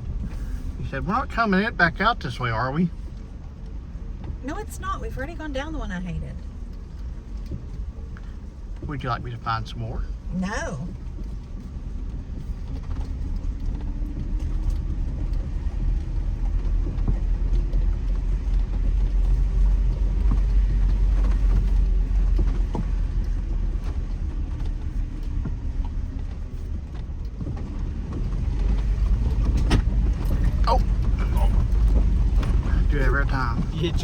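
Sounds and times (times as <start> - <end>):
vehicle engine and tyre rumble: 0.0 - 34.0
knocks and rattles over bumps: 6.3 - 34.0.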